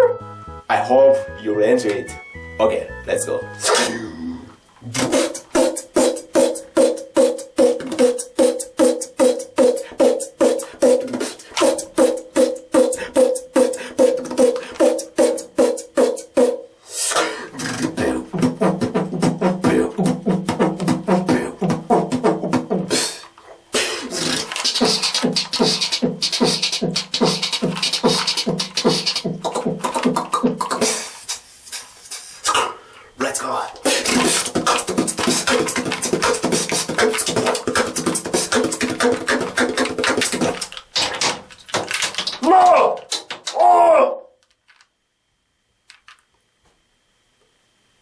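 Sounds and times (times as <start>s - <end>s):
person beatboxing: 3.6s - 40.8s.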